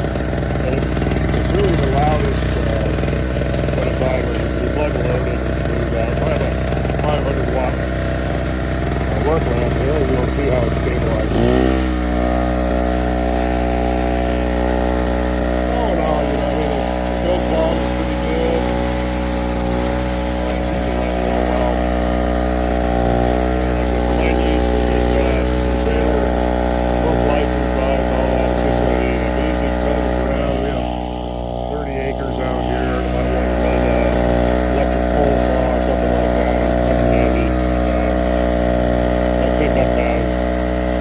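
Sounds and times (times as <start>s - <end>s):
portable generator running: 0.0s - 41.0s.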